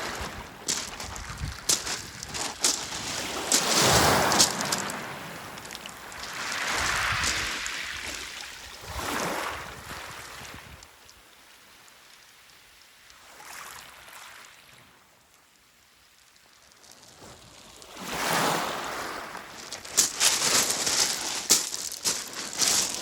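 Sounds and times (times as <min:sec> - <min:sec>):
waves washing on pebble beach: 0:00.0 - 0:15.0, 0:16.2 - 0:23.0
pebbles rattling: 0:00.6 - 0:08.3, 0:19.3 - 0:23.0.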